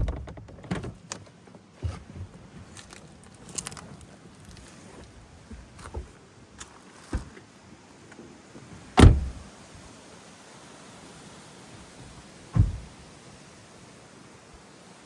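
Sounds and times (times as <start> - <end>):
footsteps crunching on a path: 2.0 - 7.4.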